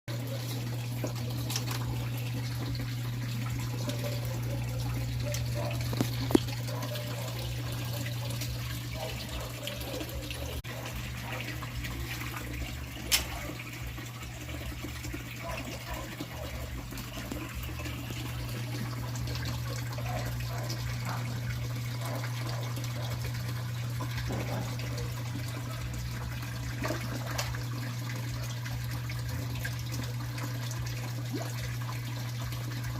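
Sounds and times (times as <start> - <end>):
water splashing in fish tank: 0.1 - 32.9.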